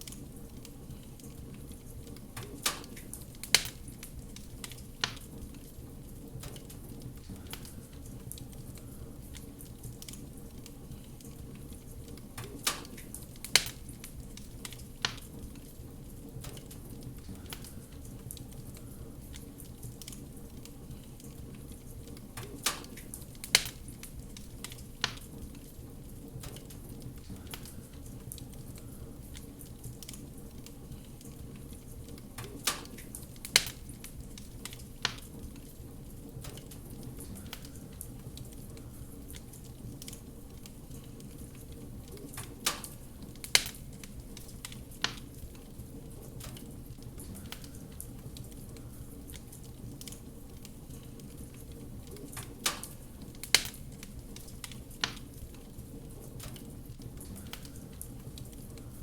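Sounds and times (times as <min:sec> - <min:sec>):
sharp pops of fire: 0:00.0 - 0:58.9
wood fire crackling: 0:00.0 - 0:59.0.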